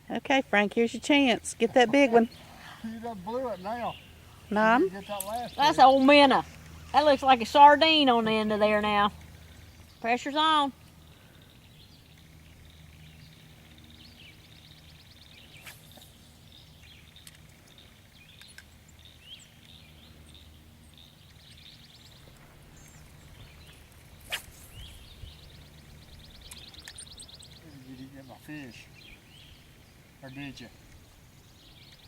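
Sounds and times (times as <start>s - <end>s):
steady low hum: 0.0s - 32.0s
small birds chirping and trilling: 0.8s - 32.0s.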